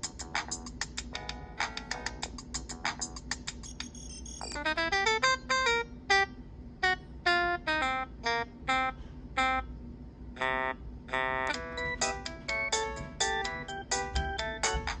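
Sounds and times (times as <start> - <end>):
polyphonic ringtone melody: 3.0 - 5.9, 11.2 - 15.0.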